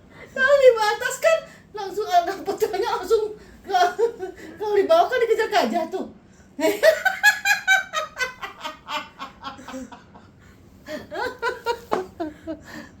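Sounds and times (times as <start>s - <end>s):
person laughing: 6.7s - 12.8s.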